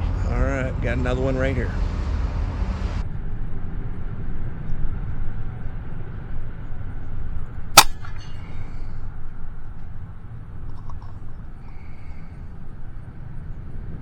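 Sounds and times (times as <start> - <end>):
steady low rumble: 0.0 - 14.0
air rifle shot: 7.8 - 8.8.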